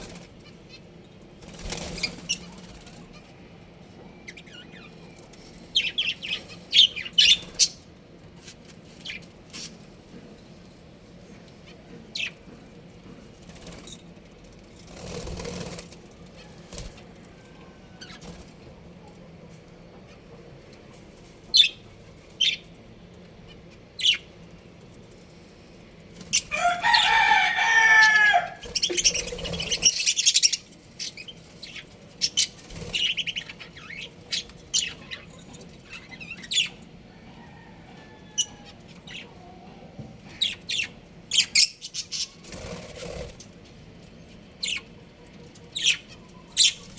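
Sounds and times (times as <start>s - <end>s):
birds chirping: 0.0s - 8.0s, 19.9s - 25.2s, 26.2s - 46.9s.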